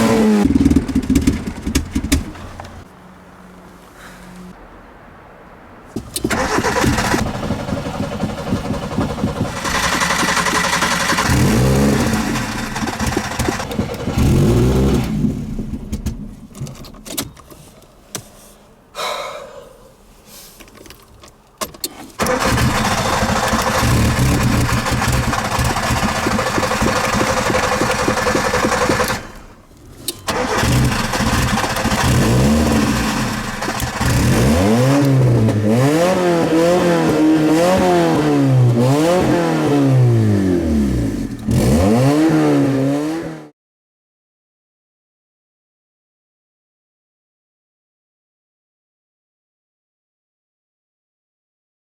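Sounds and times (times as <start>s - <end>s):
car engine revving and sputtering: 0.0s - 2.9s, 6.0s - 16.0s, 22.2s - 29.6s, 30.2s - 43.5s
car starter cranking: 6.0s - 17.5s, 20.8s - 39.4s.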